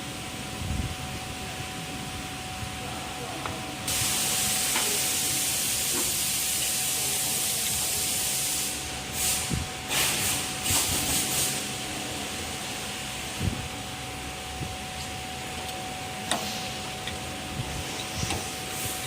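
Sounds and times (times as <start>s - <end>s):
faint machine hum: 0.0s - 19.0s
compressed air hissing: 3.9s - 13.6s, 16.2s - 19.0s.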